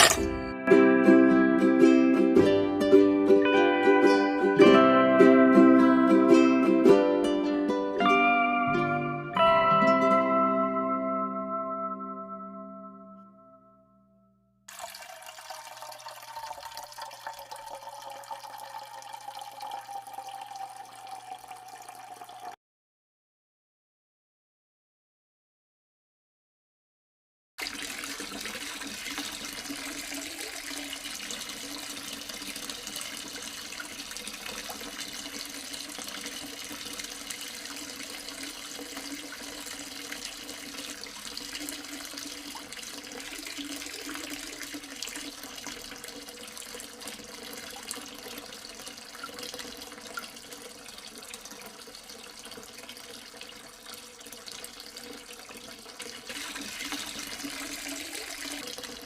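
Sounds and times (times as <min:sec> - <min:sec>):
water trickling in fountain: 0:14.7 - 0:22.6, 0:27.6 - 0:59.0.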